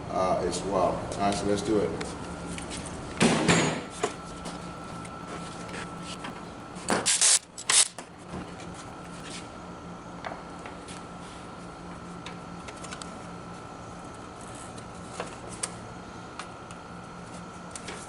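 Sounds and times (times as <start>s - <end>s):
steady low hum: 0.0s - 14.6s
tool scraping: 3.3s - 9.3s.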